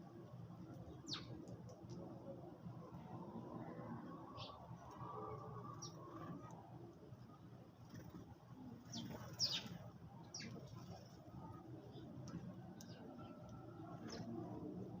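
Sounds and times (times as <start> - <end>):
sparrows chirping: 0.8 - 1.4, 5.7 - 6.0, 8.8 - 11.1, 12.8 - 13.4, 14.0 - 14.3.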